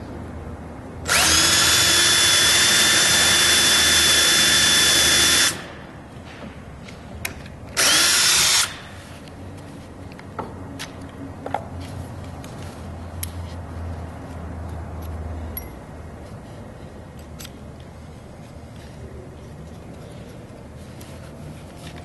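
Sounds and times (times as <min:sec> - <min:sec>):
hammer drill running: 0:01.1 - 0:05.7, 0:07.8 - 0:08.8.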